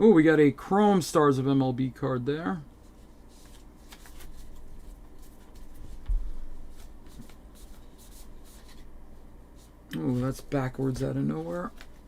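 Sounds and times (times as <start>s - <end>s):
trading cards flipping: 3.4s - 6.1s, 10.0s - 12.0s.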